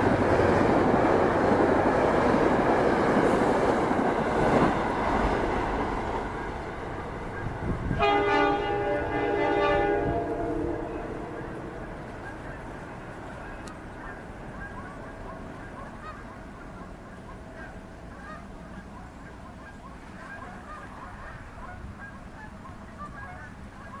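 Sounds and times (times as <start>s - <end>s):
geese honking: 7.2s - 24.0s
steady low rumble: 9.8s - 14.7s.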